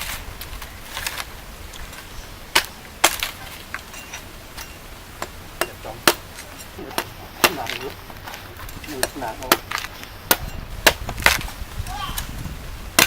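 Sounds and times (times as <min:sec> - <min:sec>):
blade chopping wood: 0:02.5 - 0:11.6.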